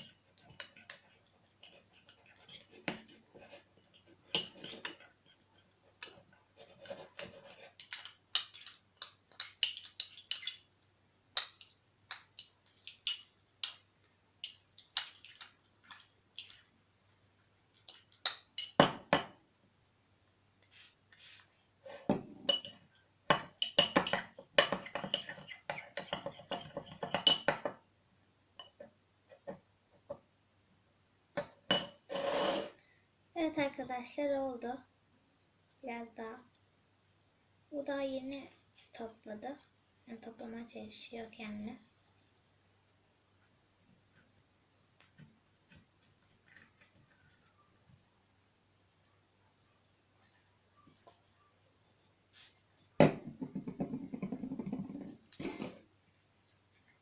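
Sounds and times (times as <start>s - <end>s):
utensil scraping against a bowl: 32.0s - 32.8s.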